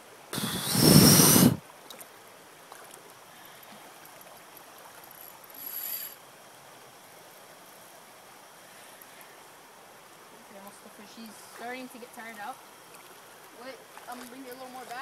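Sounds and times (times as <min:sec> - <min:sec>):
fishing reel drag buzzing: 0:00.4 - 0:01.6, 0:05.1 - 0:06.2.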